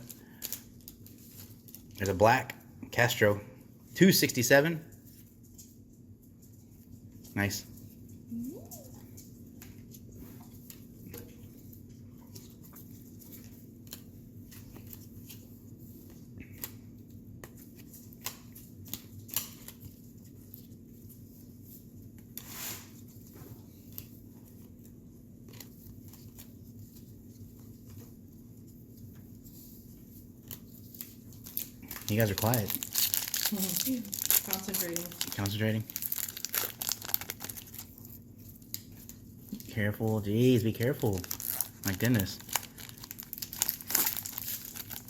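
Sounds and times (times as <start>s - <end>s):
trading cards clicking and rustling: 30.4s - 37.9s.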